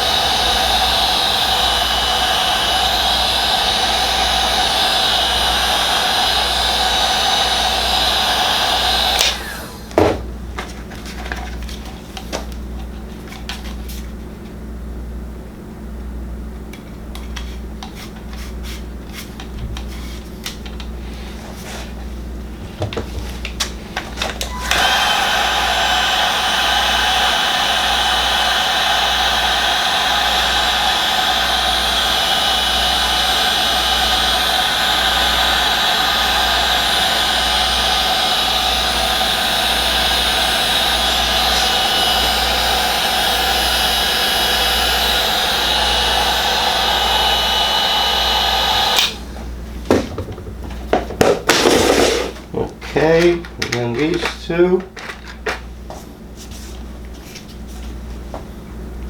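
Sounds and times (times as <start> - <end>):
heat gun blowing: 0.0 - 12.6, 17.8 - 50.0, 50.9 - 55.2
handling clicks and taps: 52.7 - 55.6.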